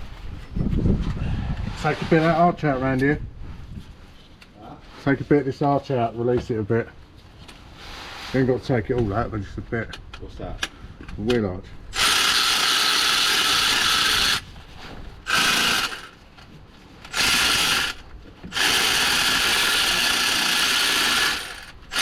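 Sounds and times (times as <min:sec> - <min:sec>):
cordless power tool bursts: 0:11.9 - 0:14.5, 0:15.2 - 0:16.2, 0:17.1 - 0:22.0.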